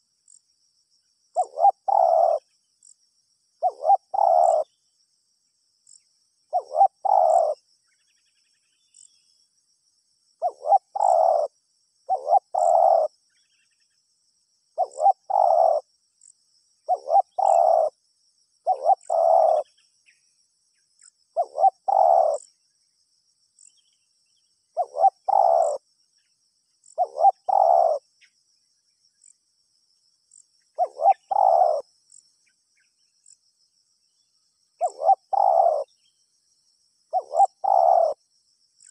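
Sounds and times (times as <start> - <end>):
faint high chirping: 0.0 - 38.9
dove cooing: 1.4 - 2.5, 3.6 - 4.7, 6.5 - 7.6, 10.4 - 11.5, 12.1 - 13.1, 14.8 - 15.9, 16.9 - 18.0, 18.6 - 19.7, 21.3 - 22.5, 24.8 - 25.8, 26.9 - 28.1, 30.8 - 31.9, 34.8 - 35.9, 37.1 - 38.2.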